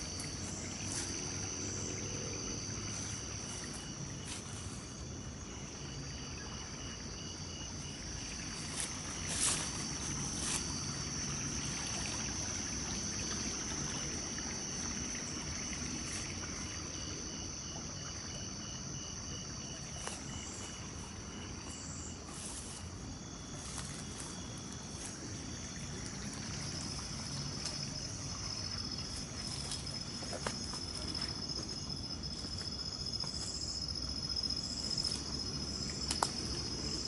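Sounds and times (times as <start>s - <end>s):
crickets trilling: 0.0s - 37.0s
lower pulsing insect call: 0.0s - 37.0s
flowing water: 7.7s - 21.6s, 22.2s - 33.3s.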